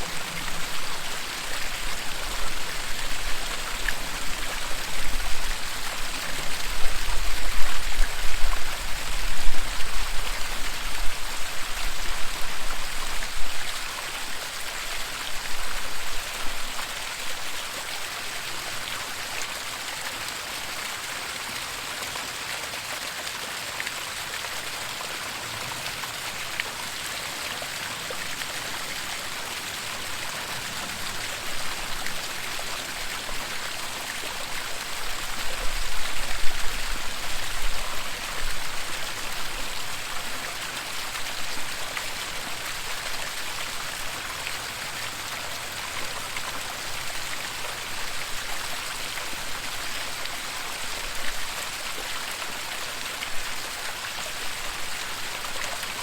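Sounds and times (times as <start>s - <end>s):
waterfall rushing: 0.0s - 14.3s.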